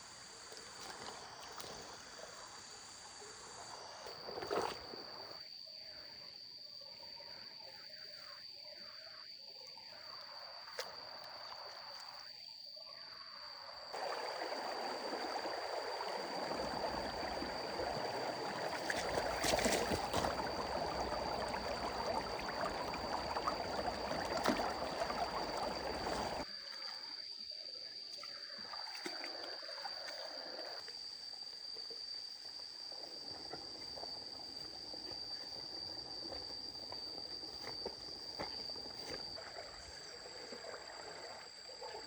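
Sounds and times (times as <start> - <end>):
water pouring: 14.0 - 26.4.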